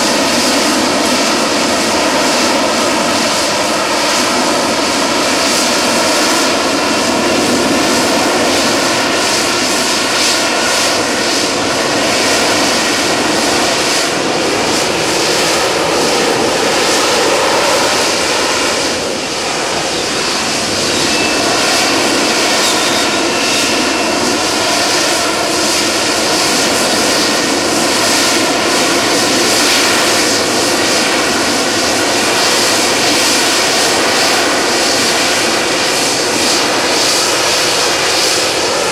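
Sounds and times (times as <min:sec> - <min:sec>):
jet engine rush and whine: 0:00.0 - 0:38.9.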